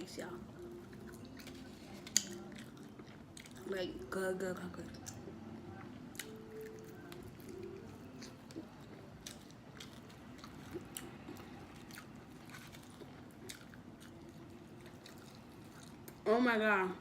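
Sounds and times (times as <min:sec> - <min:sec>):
person chewing crunchy food: 0:00.7 - 0:03.7, 0:05.8 - 0:16.2.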